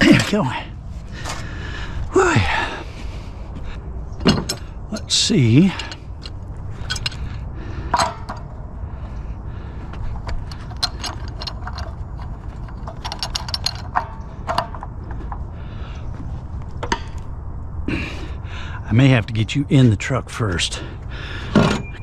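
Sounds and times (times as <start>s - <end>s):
steady low rumble: 0.0s - 22.0s
hand tools clinking on metal: 4.2s - 7.2s, 10.2s - 14.9s.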